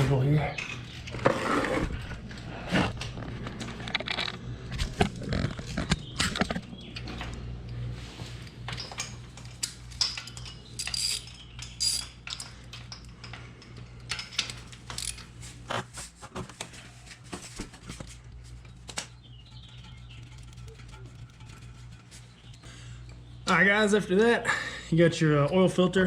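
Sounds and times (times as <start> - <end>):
low steady hum: 0.0 - 26.0
ratchet clicking on metal: 10.4 - 12.4, 14.0 - 15.2.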